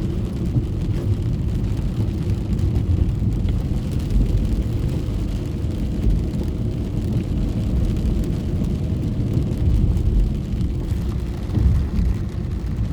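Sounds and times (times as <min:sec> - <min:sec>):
raindrops ticking on car: 0:00.0 - 0:12.9
road and engine rumble: 0:00.0 - 0:12.9.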